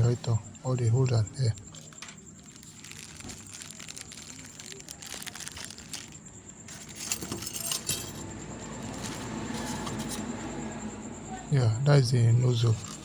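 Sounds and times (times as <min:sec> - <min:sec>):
small metal parts clinking: 0:01.7 - 0:10.2, 0:12.7 - 0:13.0.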